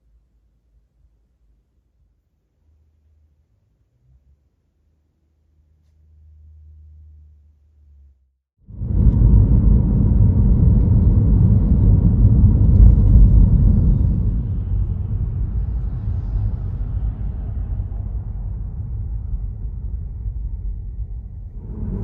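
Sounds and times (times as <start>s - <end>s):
loud low rumbling: 8.6s - 22.0s.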